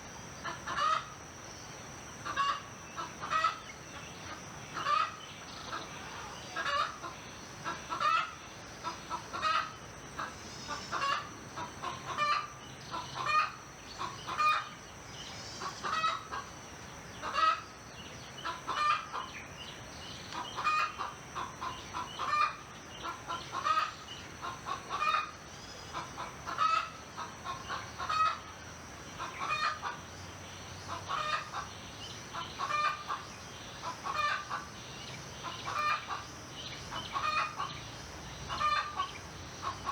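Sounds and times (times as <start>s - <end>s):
faint high-pitched hum: 0.0s - 39.9s
chickens clucking: 0.4s - 1.1s, 2.2s - 3.6s, 4.4s - 14.7s, 15.6s - 16.5s, 17.2s - 17.6s, 18.4s - 19.4s, 20.3s - 28.5s, 29.2s - 30.0s, 30.9s - 31.7s, 32.3s - 34.7s, 35.4s - 36.3s, 36.9s - 37.8s, 38.5s - 39.9s.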